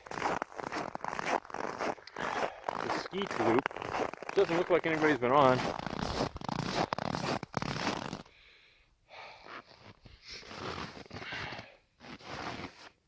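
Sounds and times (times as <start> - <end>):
rustling and scraping: 0.2 - 8.3, 12.0 - 13.0
person breathing heavily: 2.1 - 2.9, 8.2 - 10.5, 11.1 - 11.8.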